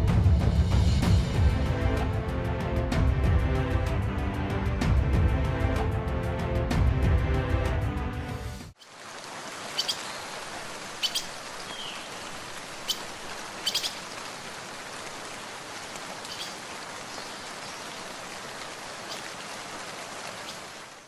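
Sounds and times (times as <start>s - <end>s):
rain hissing: 8.7s - 21.0s.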